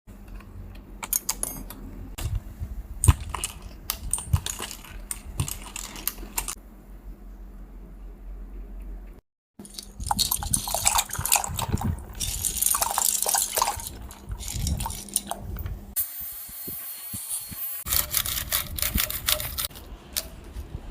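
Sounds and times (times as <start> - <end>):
rubbing and scraping: 16.8 - 20.9.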